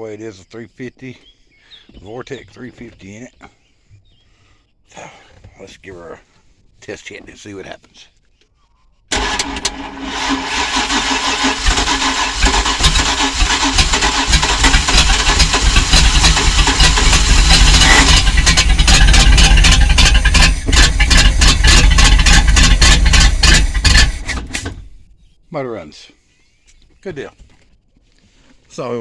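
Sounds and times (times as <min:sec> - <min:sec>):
boat engine running: 0:09.1 - 0:25.1.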